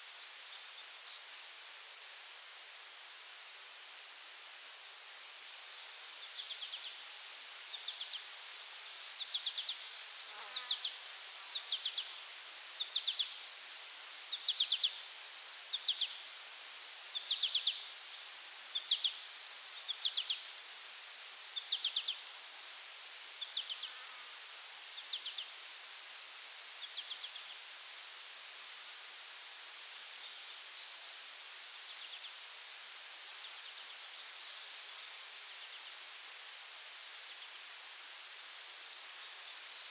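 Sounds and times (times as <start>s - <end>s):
insects buzzing drone: 0.2s - 39.9s
insect chirping trill: 4.4s - 39.9s.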